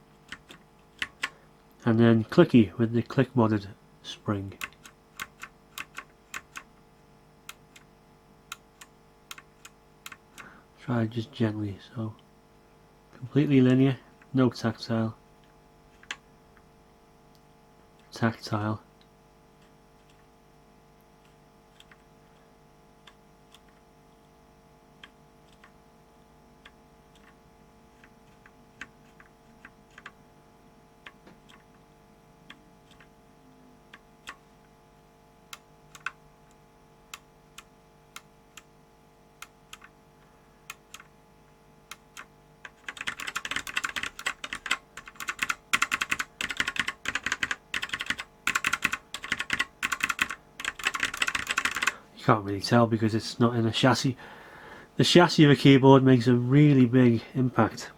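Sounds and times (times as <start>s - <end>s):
rapid clicking like fast typing: 0.3s - 1.4s, 4.6s - 6.7s, 8.5s - 10.5s, 16.0s - 16.2s, 26.6s - 30.2s, 35.5s - 36.2s, 41.9s - 52.0s.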